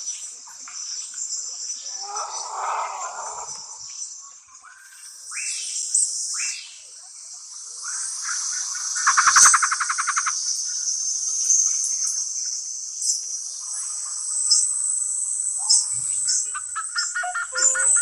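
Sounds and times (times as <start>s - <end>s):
insects droning: 0.0s - 18.0s
bird calls: 1.8s - 6.8s, 7.9s - 10.6s, 15.7s - 18.0s.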